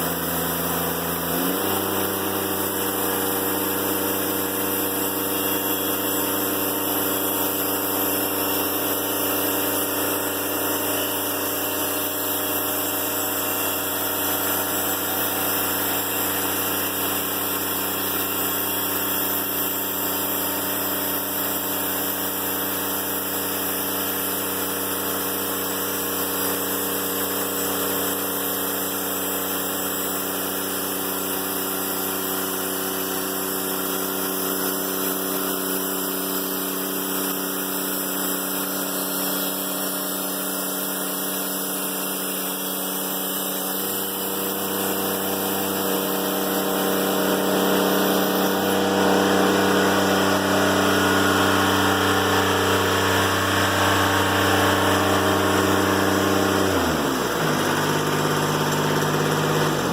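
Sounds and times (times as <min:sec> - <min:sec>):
sawmill diesel engine running: 0:00.0 - 0:59.9.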